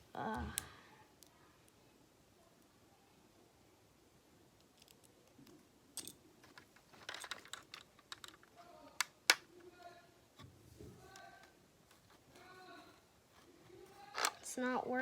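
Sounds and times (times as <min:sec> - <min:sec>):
plastic bricks clicking and rattling: 0:06.0 - 0:09.4, 0:14.1 - 0:14.5
sharp plastic snaps: 0:07.0 - 0:09.7, 0:14.1 - 0:14.5.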